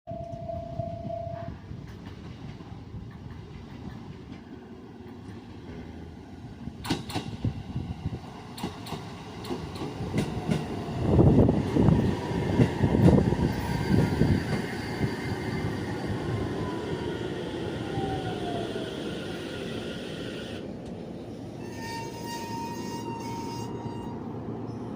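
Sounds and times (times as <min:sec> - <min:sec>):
train wheels clacking: 0:01.8 - 0:04.5, 0:06.8 - 0:07.5, 0:08.5 - 0:10.8.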